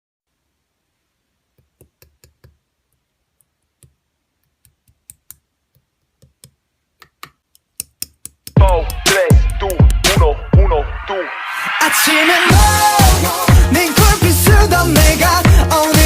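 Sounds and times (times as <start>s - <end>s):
loud music with bass sweeps: 8.6s - 16.0s.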